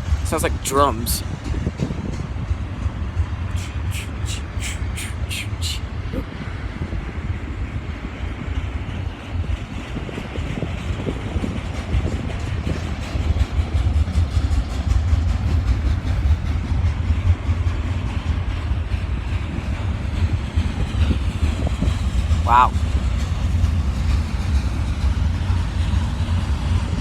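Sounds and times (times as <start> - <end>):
freight train rumbling past: 0.0 - 27.0
train wheels knocking and clunking: 1.2 - 3.8, 8.1 - 27.0.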